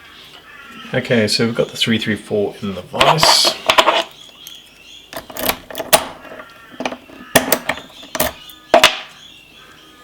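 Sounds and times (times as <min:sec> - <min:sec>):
metal clicks and knocks: 0:05.2 - 0:09.1.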